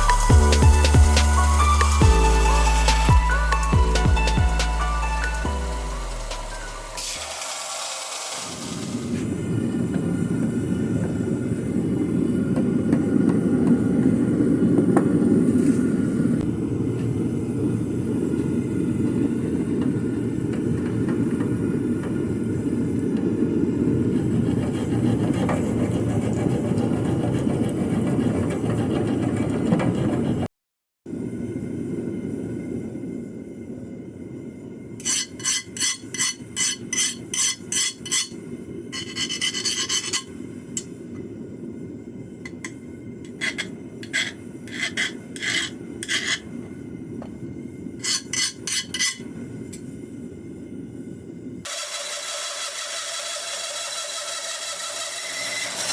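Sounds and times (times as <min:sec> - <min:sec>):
low mechanical rumble: 0:00.0 - 0:07.4, 0:08.4 - 0:30.5
file scraping steel knife: 0:24.2 - 0:30.5, 0:35.0 - 0:38.4, 0:39.0 - 0:40.3, 0:43.3 - 0:46.5, 0:48.0 - 0:49.2.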